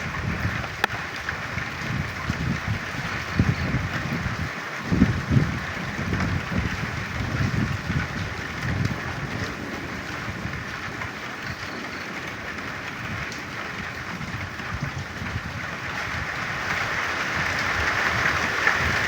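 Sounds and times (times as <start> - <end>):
rain falling: 0.0 - 19.0.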